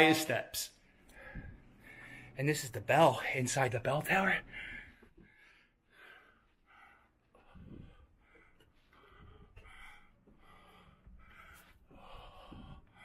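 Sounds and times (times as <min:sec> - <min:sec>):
man breathing heavily: 0:00.8 - 0:02.4, 0:04.4 - 0:13.0.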